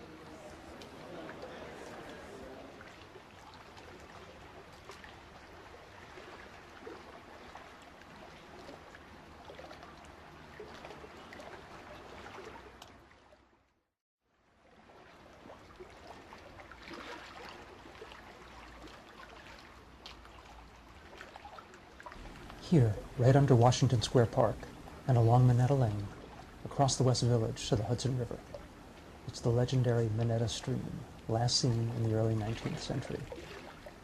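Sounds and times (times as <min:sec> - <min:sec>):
trickling stream: 0:00.0 - 0:34.0.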